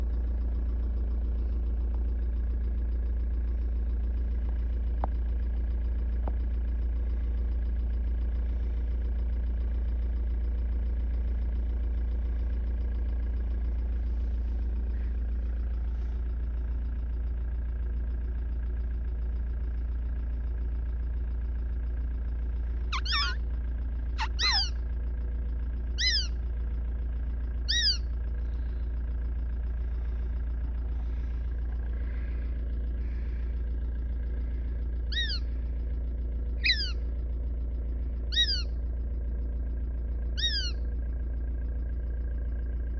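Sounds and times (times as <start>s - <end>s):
engine idling: 0.0s - 42.9s
short calls falling in pitch: 22.9s - 23.4s, 24.2s - 24.7s, 26.0s - 26.3s, 27.7s - 28.0s, 35.2s - 35.4s, 36.6s - 36.9s, 38.4s - 38.6s, 40.4s - 40.7s.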